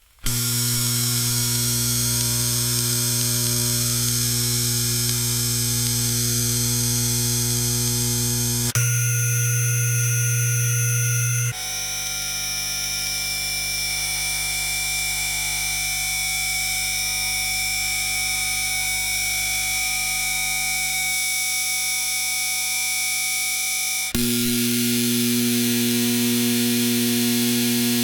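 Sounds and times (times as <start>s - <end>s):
electrical hum and buzz: 0.3s - 11.6s, 24.2s - 28.0s.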